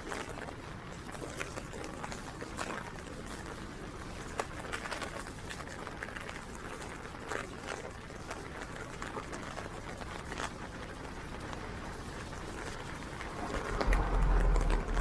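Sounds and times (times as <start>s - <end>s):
steady rain falling: 0.0s - 15.0s
low rumble: 13.0s - 15.0s.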